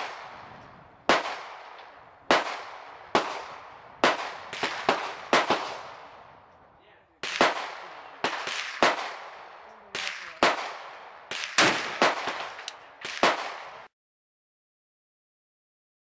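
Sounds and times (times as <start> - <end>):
rifle shots: 0.0 - 6.4, 7.2 - 13.9.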